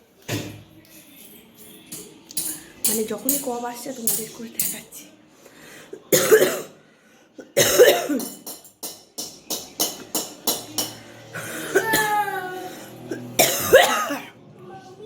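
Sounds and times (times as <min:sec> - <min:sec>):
woman coughing hard: 0:06.1 - 0:06.8, 0:07.4 - 0:08.4, 0:11.4 - 0:12.4, 0:13.1 - 0:14.4.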